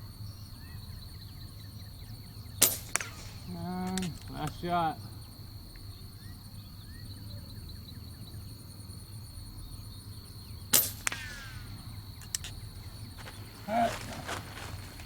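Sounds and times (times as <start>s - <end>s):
air rifle shot: 2.6s - 4.7s, 10.7s - 12.5s.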